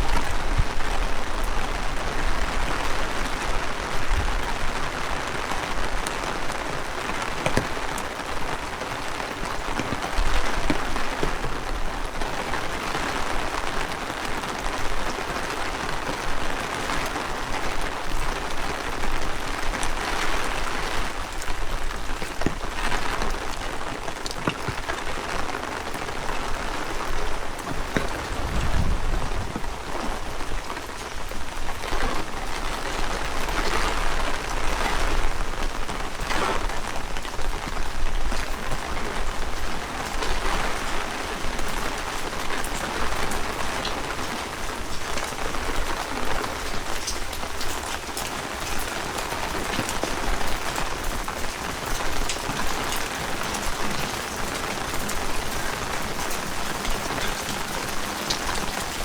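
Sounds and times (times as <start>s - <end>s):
heavy rain: 0.0s - 59.0s
raindrops ticking: 0.0s - 59.0s
low rumble: 28.2s - 30.3s.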